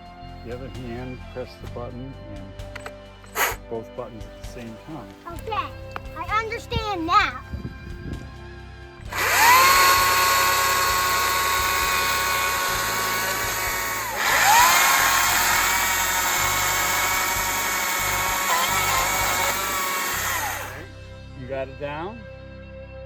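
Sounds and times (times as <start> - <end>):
electric chainsaw cutting wood: 3.3 - 3.6, 9.1 - 20.9.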